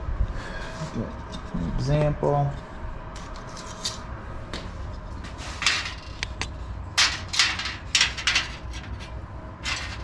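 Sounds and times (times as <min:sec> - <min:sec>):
metal scraping on workbench: 0:05.2 - 0:06.2.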